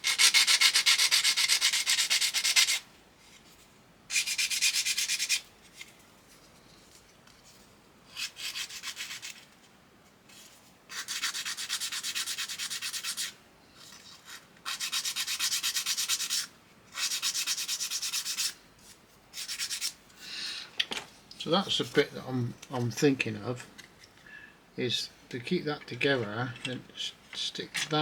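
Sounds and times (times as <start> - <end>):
plastic part being sanded: 0.0 - 2.8, 4.1 - 5.4, 8.1 - 9.5, 10.9 - 13.4, 14.2 - 18.6, 19.4 - 20.0.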